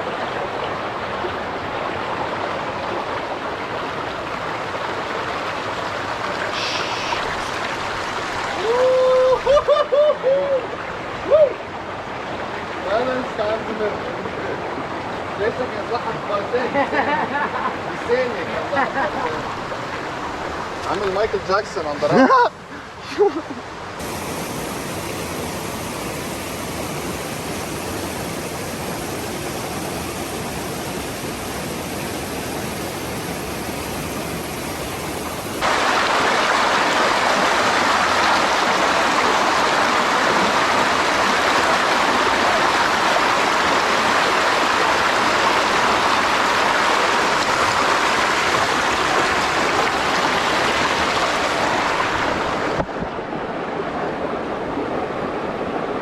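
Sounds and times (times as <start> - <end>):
river water rushing over rocks: 0.0 - 9.6, 10.2 - 56.0.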